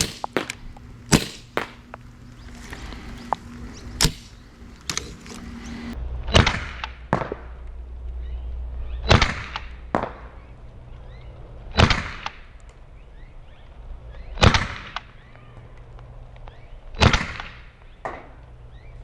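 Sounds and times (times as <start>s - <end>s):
gel blaster pistol shots: 0.0s - 2.0s, 4.0s - 4.4s.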